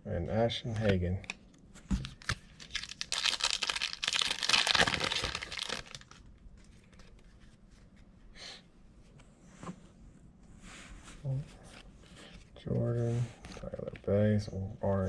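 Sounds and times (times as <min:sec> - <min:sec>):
cards rustling and clicking: 0:00.8 - 0:08.0
wrapper crinkling: 0:02.0 - 0:06.3.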